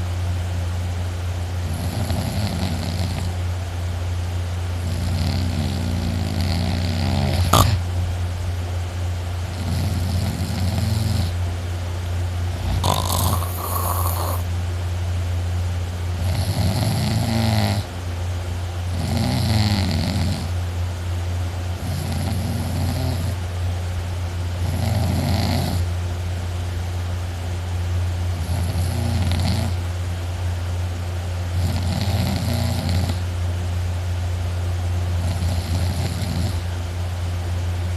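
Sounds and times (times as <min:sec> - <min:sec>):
steady low hum: 0:00.0 - 0:37.9
person snoring loudly: 0:01.6 - 0:03.4, 0:04.8 - 0:07.9, 0:09.5 - 0:11.4, 0:12.6 - 0:14.5, 0:16.2 - 0:17.9, 0:18.9 - 0:20.5, 0:21.8 - 0:23.4, 0:24.6 - 0:25.9, 0:28.4 - 0:29.8, 0:31.6 - 0:33.2, 0:35.2 - 0:36.6.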